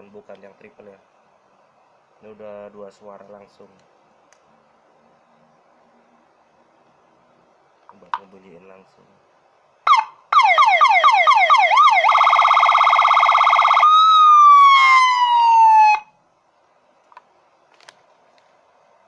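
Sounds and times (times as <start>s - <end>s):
electronic police siren: 9.9s - 16.1s.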